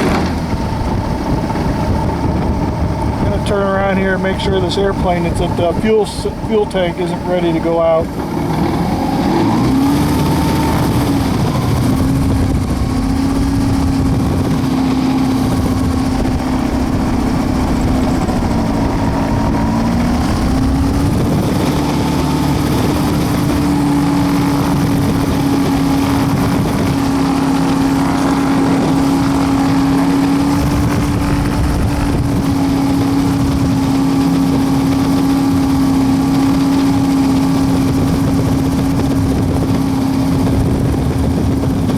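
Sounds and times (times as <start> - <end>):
propeller engine droning: 0.0 - 41.9.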